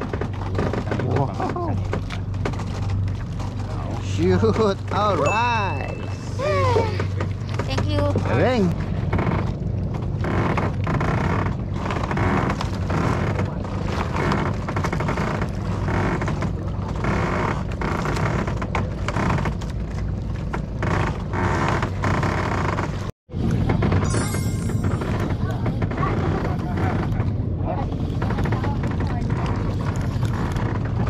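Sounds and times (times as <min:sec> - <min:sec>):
wind and water rushing: 0:00.0 - 0:15.9
boat engine droning: 0:00.0 - 0:31.0.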